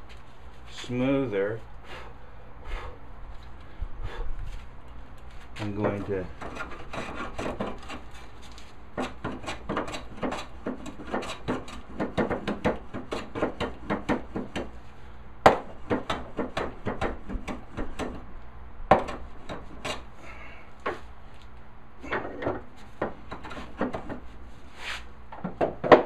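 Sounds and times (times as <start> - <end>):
hand plane strokes on wood: 5.9 - 8.3, 9.0 - 14.2
sharp knocks: 9.0 - 14.7, 15.4 - 18.2, 18.9 - 20.0, 22.1 - 24.3, 25.3 - 26.0.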